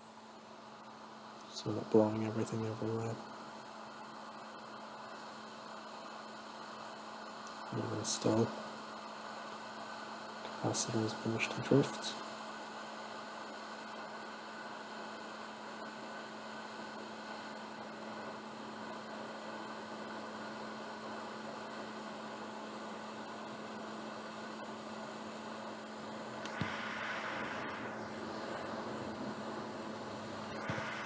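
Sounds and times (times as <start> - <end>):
low constant hum: 0.0 - 5.3, 7.3 - 14.2, 23.3 - 31.0
click: 7.4 - 7.6
hot air station hissing: 10.5 - 12.3, 26.0 - 31.0.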